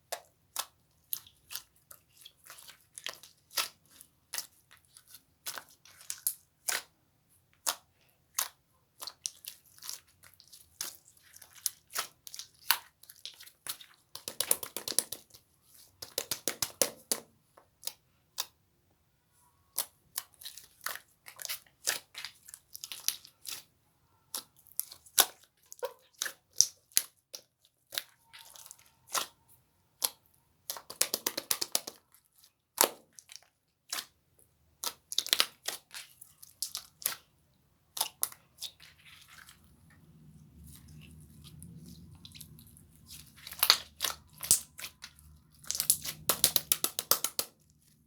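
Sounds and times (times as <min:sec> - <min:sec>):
slime clicking and popping: 0:30.0 - 0:32.0, 0:43.4 - 0:47.6
slime crackling: 0:37.9 - 0:48.0.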